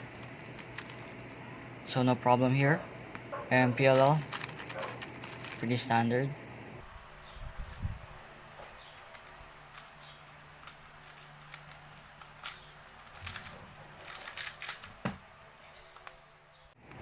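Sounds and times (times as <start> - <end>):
plastic puzzle cube clicking: 8.7 - 15.2.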